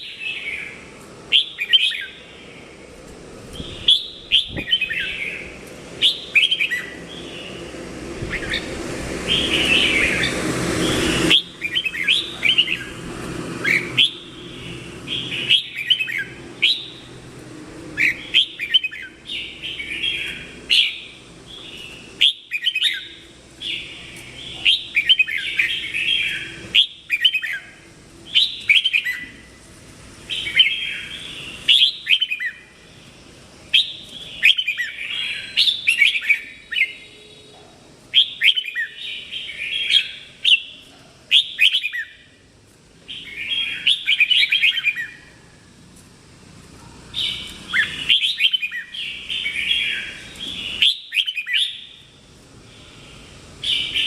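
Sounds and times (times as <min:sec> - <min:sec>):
bird warbling song: 0:00.0 - 0:02.8, 0:03.5 - 0:13.0, 0:13.6 - 0:17.2, 0:18.0 - 0:27.7, 0:30.3 - 0:33.1, 0:33.7 - 0:42.2, 0:43.1 - 0:45.3, 0:47.1 - 0:54.0
rushing noise: 0:02.3 - 0:22.2.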